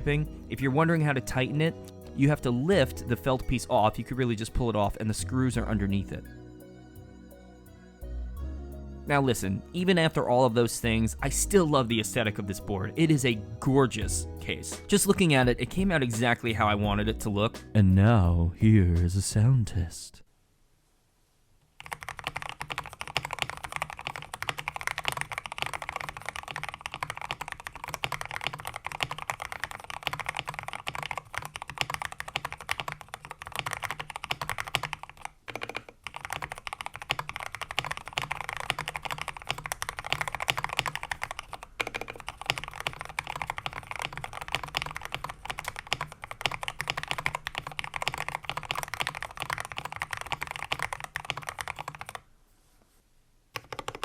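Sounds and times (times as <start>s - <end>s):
mechanical keyboard typing: 21.8s - 52.2s, 53.6s - 54.0s.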